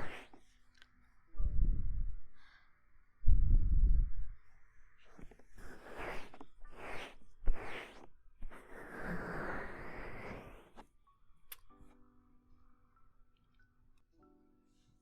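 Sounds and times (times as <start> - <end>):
soft rustling ear cleaning: 0.0 - 0.6, 5.0 - 10.8.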